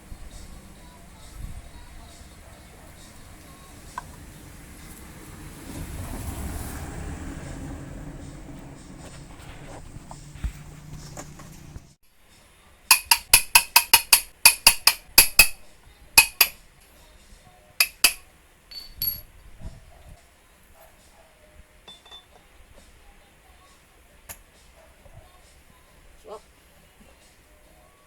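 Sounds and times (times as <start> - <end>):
metal-on-metal taps ringing: 12.9 - 15.6, 16.2 - 16.6, 17.8 - 19.3, 21.9 - 22.3.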